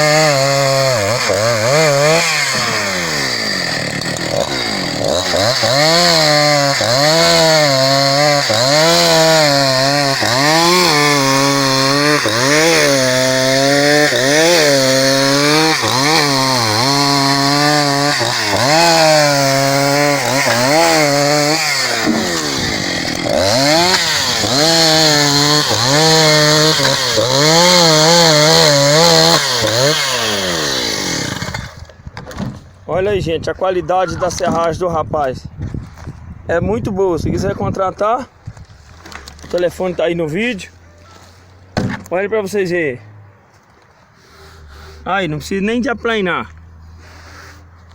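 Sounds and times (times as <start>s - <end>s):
chainsaw cutting wood: 0.0s - 32.0s.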